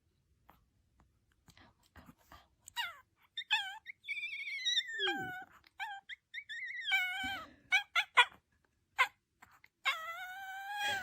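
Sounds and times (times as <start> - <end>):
dog whining howls: 2.8 - 8.3, 9.8 - 11.0
dog yelps: 2.8 - 8.4, 9.0 - 9.2, 9.8 - 11.0.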